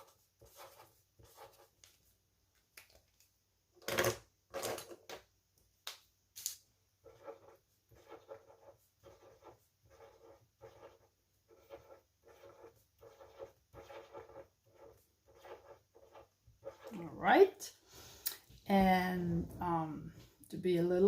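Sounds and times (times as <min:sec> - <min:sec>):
marker stroking on paper: 0:00.0 - 0:02.1, 0:07.0 - 0:17.1.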